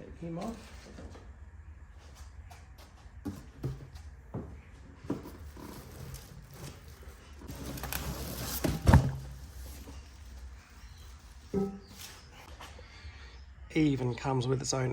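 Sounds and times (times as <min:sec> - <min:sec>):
low steady hum: 0:00.0 - 0:14.9
rustling: 0:04.9 - 0:12.7.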